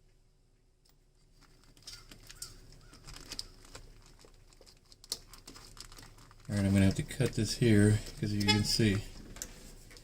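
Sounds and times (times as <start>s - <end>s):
cables and tools clicking and rustling: 0.8s - 10.0s
faint bird calls: 1.8s - 3.8s.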